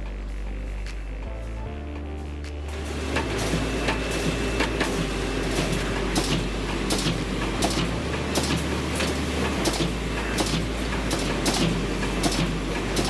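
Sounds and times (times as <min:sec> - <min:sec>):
machine humming: 0:00.0 - 0:13.0
sharp machine clack: 0:02.7 - 0:13.0.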